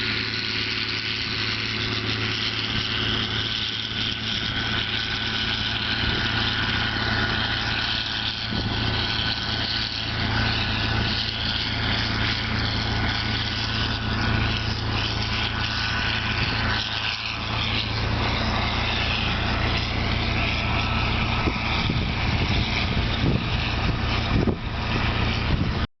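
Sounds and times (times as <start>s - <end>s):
round baler clattering: 0.0s - 25.9s
tractor diesel engine running: 0.0s - 25.9s.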